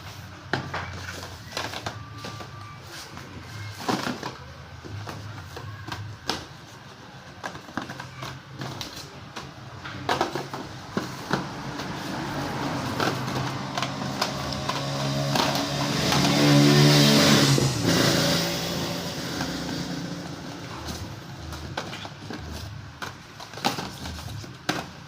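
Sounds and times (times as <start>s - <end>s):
package and cable rustling: 0.6s - 16.8s
passing vehicle engine hum: 11.4s - 21.3s.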